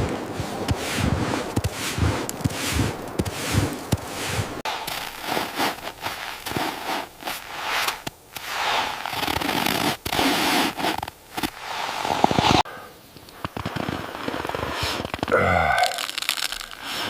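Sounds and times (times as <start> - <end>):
crackling and scratching noise: 0.0 - 17.0.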